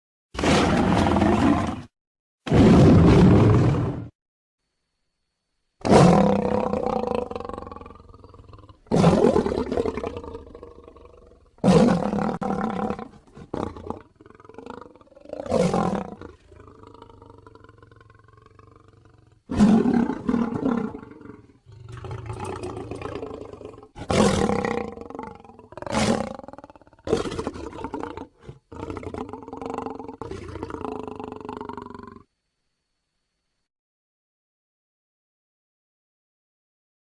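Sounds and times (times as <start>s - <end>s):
cartoon alligator roars: 0.4s - 4.1s, 5.8s - 32.3s
rumbling growls: 6.1s - 32.2s.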